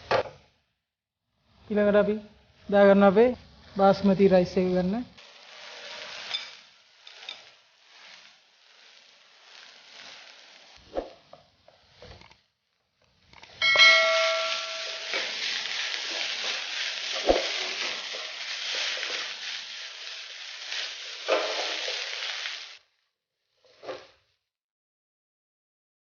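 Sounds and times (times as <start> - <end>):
rice sizzling in a pan: 1.4 - 22.9
spatula clanging on pan: 6.2 - 7.6, 13.6 - 19.2.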